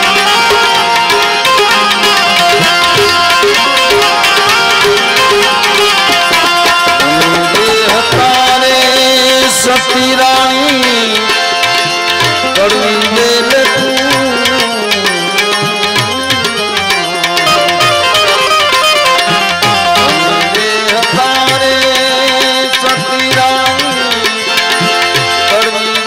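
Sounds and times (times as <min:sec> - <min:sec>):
sliding melody line: 0:00.0 - 0:26.0
tabla drumming: 0:00.0 - 0:26.0.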